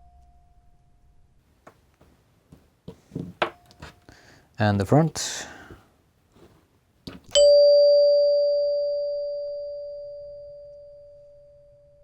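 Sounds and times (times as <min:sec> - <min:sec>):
door chime ding: 0:07.3 - 0:12.0.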